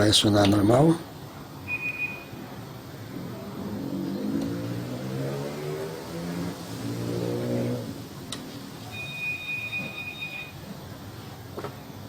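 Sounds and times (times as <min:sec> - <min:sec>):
high-pitched beep: 0:01.7 - 0:02.4, 0:09.0 - 0:10.6.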